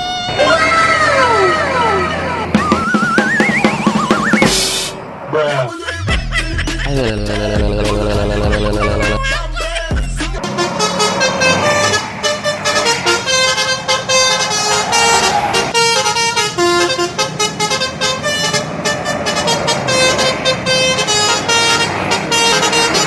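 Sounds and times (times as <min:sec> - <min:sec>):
multi-tone air horn melody: 0:10.4 - 0:23.0.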